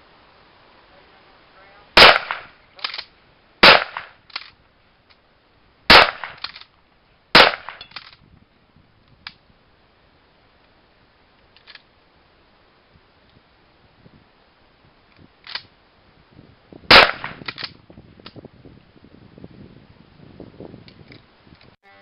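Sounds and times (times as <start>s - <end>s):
shotgun blasts: 2.0s - 4.2s, 5.9s - 6.6s, 7.3s - 8.0s, 16.9s - 17.6s.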